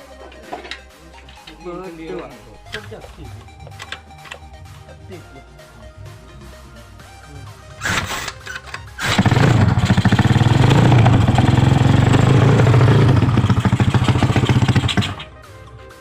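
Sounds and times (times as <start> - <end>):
scooter engine running: 9.0 - 15.3.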